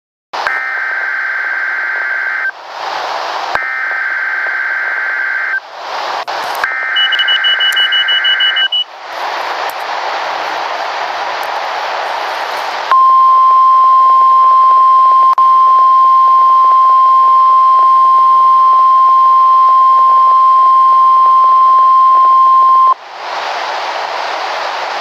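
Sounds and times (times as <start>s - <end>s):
radio static hiss: 0.4s - 25.0s
loud high alarm tone: 0.5s - 2.5s, 3.6s - 5.6s, 6.7s - 8.8s.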